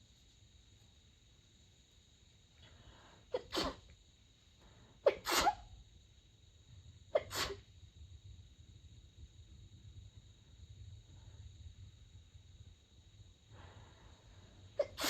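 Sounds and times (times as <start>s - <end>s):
woman sneezing: 3.3s - 3.9s, 5.0s - 5.7s, 7.2s - 7.7s, 14.8s - 15.0s.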